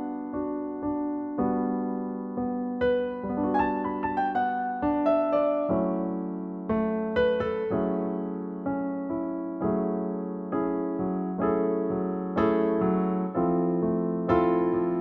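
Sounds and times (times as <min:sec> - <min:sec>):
gentle piano chords: 0:00.0 - 0:15.0.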